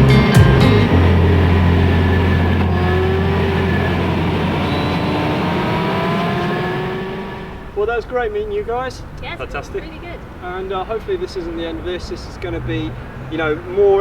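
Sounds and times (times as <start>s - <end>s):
musical beat: 0.0s - 4.0s
car engine running: 0.0s - 7.8s.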